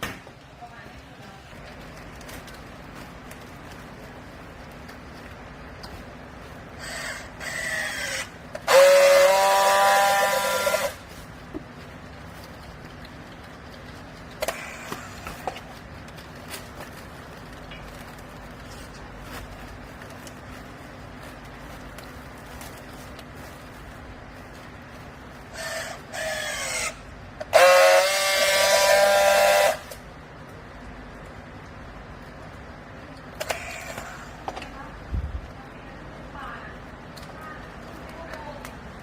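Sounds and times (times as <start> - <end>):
baling strap squealing rasp: 25.5 - 27.0.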